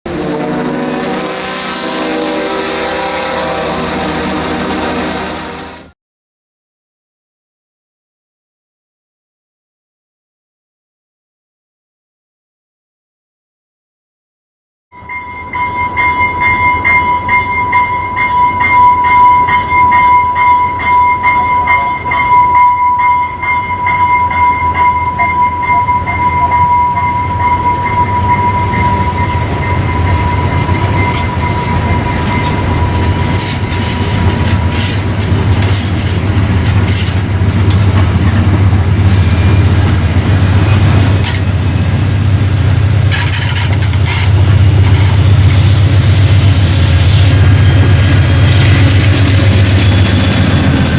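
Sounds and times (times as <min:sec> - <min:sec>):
high ringing tone: 0:15.0 - 0:50.6
diesel locomotive engine rumble: 0:15.0 - 0:50.9
train brakes squealing: 0:15.0 - 0:50.9.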